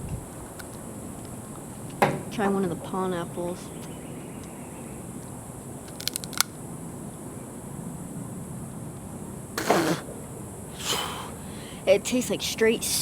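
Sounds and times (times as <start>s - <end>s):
sharp clicks: 5.9s - 6.6s
high-pitched hiss: 9.4s - 13.0s
short breathy sound: 10.8s - 11.8s.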